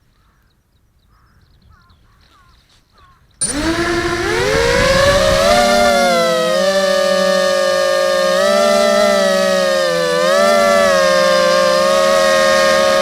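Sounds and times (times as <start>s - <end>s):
quadcopter motors whining: 3.4s - 13.0s.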